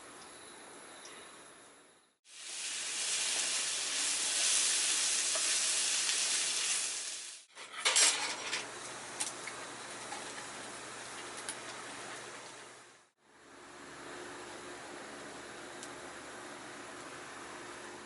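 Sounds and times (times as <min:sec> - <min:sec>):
food sizzling in frying pan: 0:02.2 - 0:07.5.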